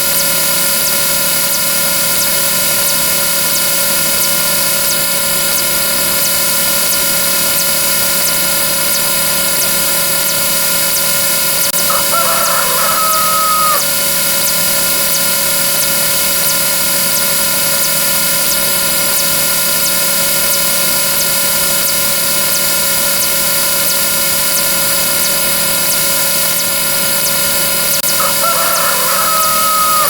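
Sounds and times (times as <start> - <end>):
rooster crowing: 11.8 - 13.9, 28.0 - 30.0.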